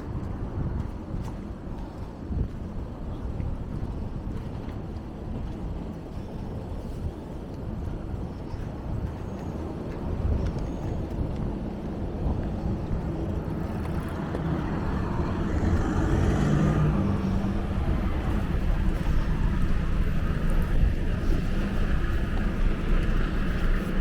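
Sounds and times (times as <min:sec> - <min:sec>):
wind rumbling on microphone: 0:00.0 - 0:24.0
motor vehicle passing: 0:13.3 - 0:24.0.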